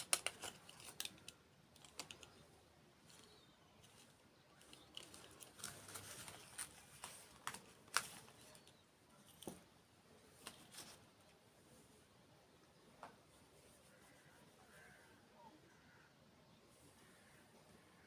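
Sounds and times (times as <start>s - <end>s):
eating clicks and crackles: 0.0s - 9.4s.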